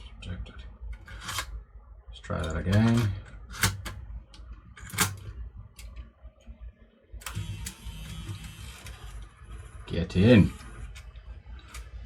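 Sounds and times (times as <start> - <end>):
tape-loading mechanism whirr: 7.2 - 12.0.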